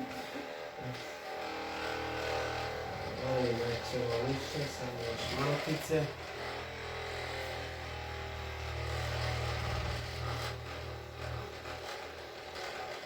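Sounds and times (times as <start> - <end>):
small electric motor humming: 0.0 - 13.0.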